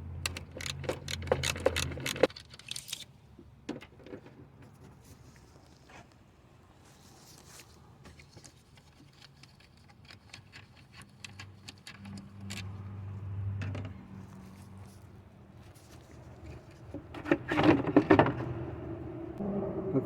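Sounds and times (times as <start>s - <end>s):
hand tools clicking and rattling: 0.2s - 3.1s, 9.0s - 12.9s.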